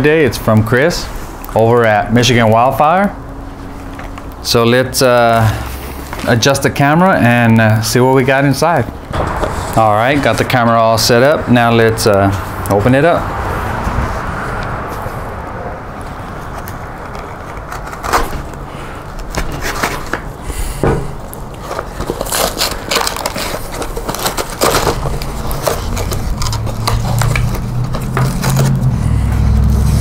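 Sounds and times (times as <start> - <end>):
low rumble: 9.0 - 17.1
cardboard box tearing and crinkling: 16.5 - 20.4, 21.1 - 29.0.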